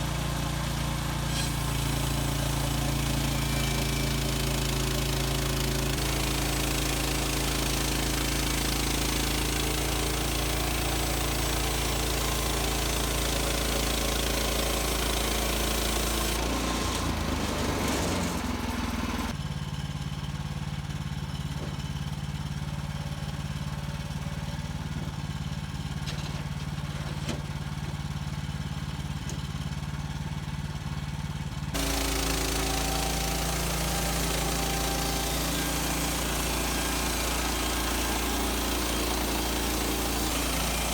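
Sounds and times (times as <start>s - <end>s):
sawmill gas engine running: 0.0s - 40.9s.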